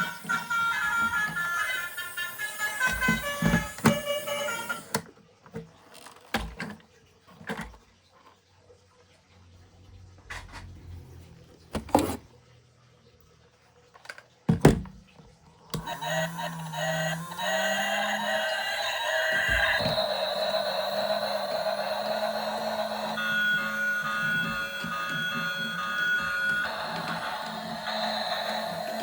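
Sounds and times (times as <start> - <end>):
short melody: 15.8 - 29.0.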